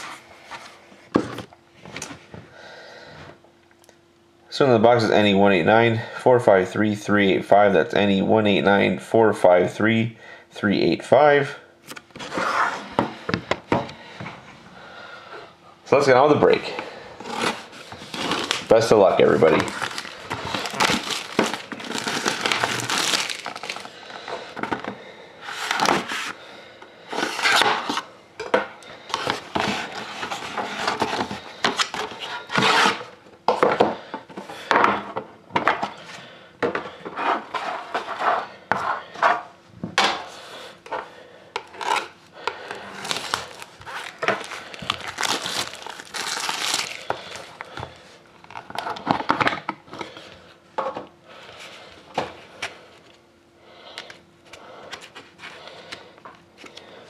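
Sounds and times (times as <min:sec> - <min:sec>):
plastic wrapping crinkling: 0:17.2 - 0:24.1, 0:41.6 - 0:47.8
box being handled and opened: 0:17.2 - 0:26.4, 0:29.1 - 0:33.1, 0:43.0 - 0:47.7.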